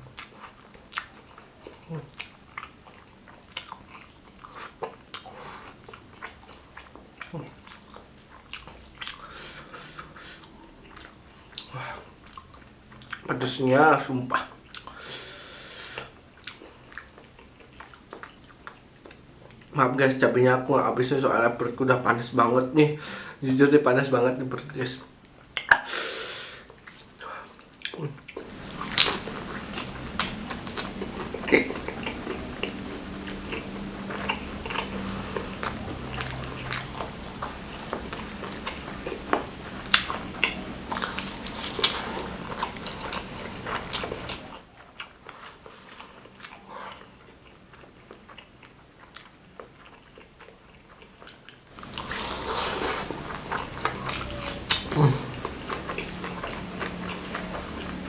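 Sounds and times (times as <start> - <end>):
person chewing: 0.0 - 13.3, 14.4 - 19.7, 26.6 - 58.0
low hum: 28.4 - 44.6
rushing mouth sound: 51.8 - 57.8.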